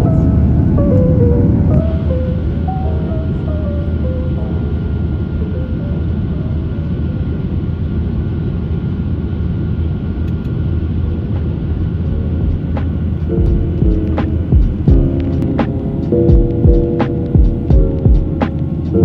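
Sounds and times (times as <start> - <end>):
airplane cabin engine rumble: 0.0 - 19.0.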